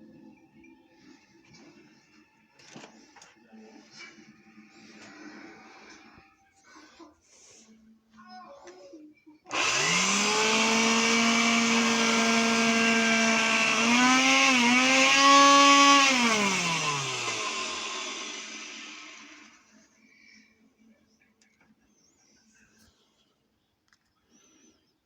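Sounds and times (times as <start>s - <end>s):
vacuum cleaner motor whine: 9.5s - 19.6s.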